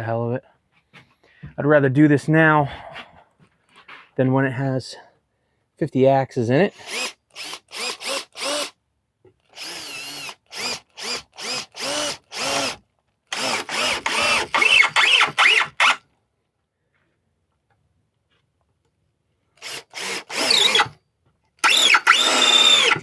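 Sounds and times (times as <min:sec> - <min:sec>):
power drill driving a screw: 0:06.8 - 0:08.8, 0:09.5 - 0:16.0, 0:19.6 - 0:21.0, 0:21.6 - 0:23.0.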